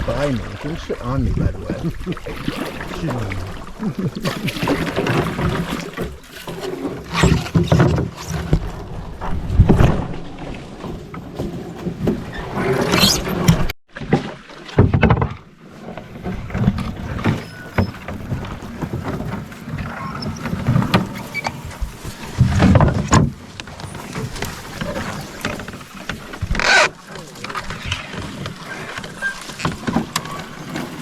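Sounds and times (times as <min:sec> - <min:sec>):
paddle splashes: 0:00.0 - 0:31.0
knocks against canoe hull: 0:13.5 - 0:15.4.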